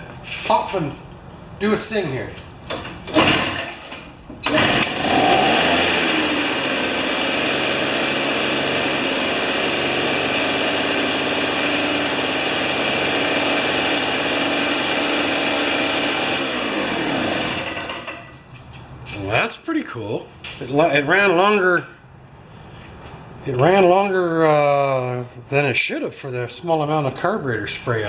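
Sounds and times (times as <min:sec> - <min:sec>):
two-stroke engine running: 0:04.4 - 0:18.3.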